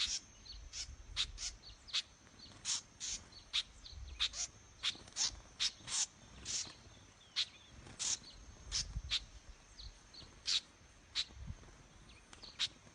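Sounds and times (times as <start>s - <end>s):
small birds alarm calls: 0.0s - 12.9s.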